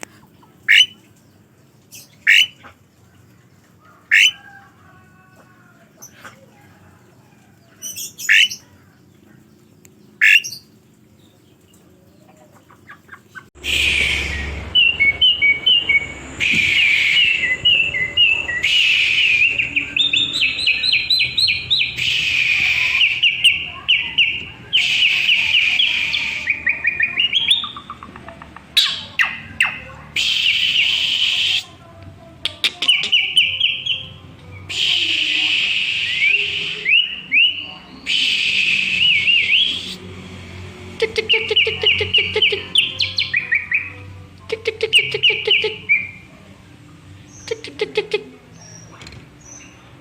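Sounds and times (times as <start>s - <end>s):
starling song: 0.4s - 1.2s, 12.5s - 50.0s.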